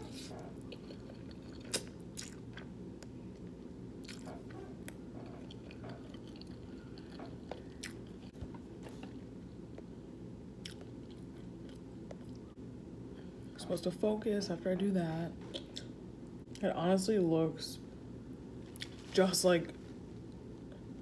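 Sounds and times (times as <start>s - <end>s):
low room hum: 0.0s - 21.0s
chewing with wet mouth clicks: 0.4s - 8.4s, 10.6s - 12.5s.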